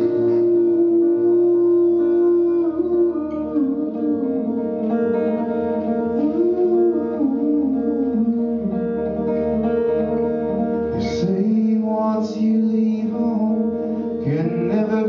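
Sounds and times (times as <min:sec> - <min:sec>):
guitar playing sliding melody: 0:00.0 - 0:15.0.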